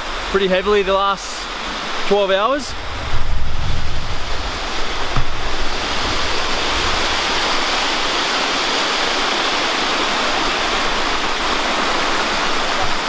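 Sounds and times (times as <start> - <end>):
creek rushing: 0.0 - 13.0
low thump: 2.7 - 6.9.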